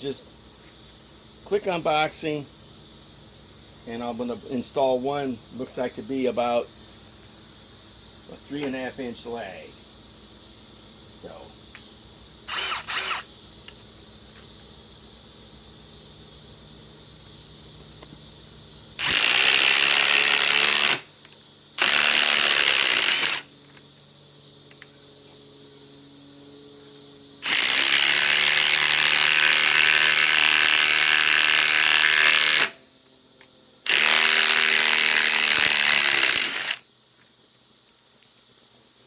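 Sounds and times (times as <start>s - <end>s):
impact wrench hammering screw: 12.5s - 13.3s, 19.0s - 21.0s, 21.8s - 23.5s, 33.9s - 36.8s.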